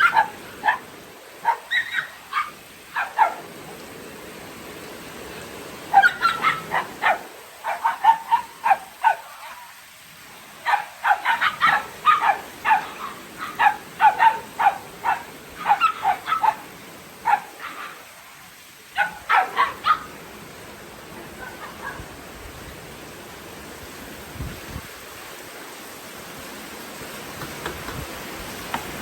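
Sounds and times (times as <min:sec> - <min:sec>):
dogs barking and yipping: 0:00.0 - 0:03.6, 0:05.9 - 0:09.8, 0:10.6 - 0:18.2, 0:18.9 - 0:20.2, 0:21.3 - 0:22.1.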